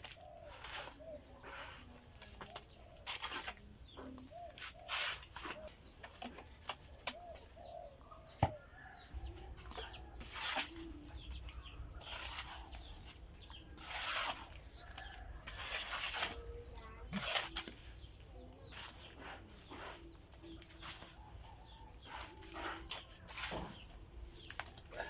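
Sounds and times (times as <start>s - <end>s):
trowel scraping cement: 0.0s - 6.8s, 9.6s - 25.0s
chickens clucking: 0.0s - 13.8s
birds chirping: 0.0s - 25.0s.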